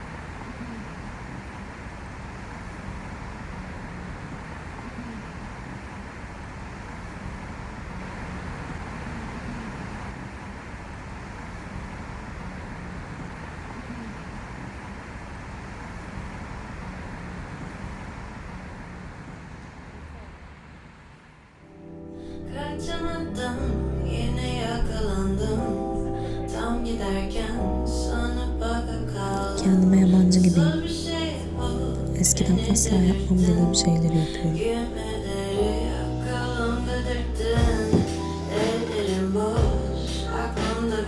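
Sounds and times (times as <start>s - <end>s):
road traffic rumble: 0.0s - 21.6s.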